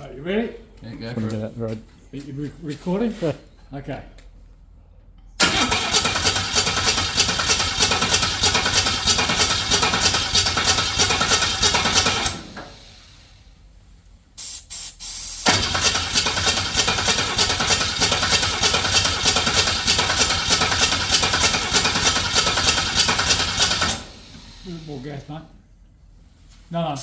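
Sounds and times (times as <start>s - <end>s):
car engine cranking and starting: 5.4s - 13.4s, 15.1s - 25.2s.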